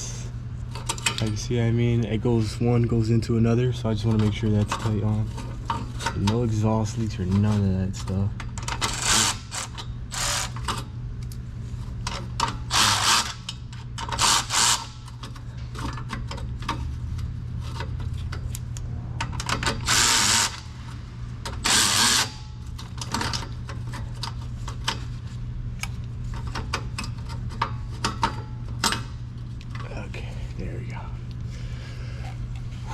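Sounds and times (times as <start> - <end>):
steady low hum: 0.0 - 32.9
wrench ratcheting and scraping: 8.4 - 10.9, 12.0 - 16.8, 19.2 - 25.1.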